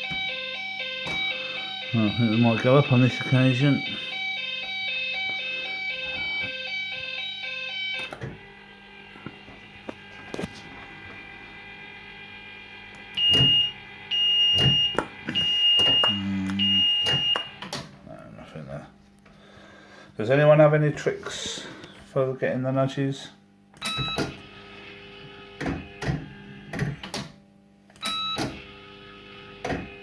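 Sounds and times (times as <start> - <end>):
stepped beeping tune: 0.0 - 8.0, 13.2 - 17.5
long high-pitched beeps: 0.0 - 8.1, 13.2 - 17.5.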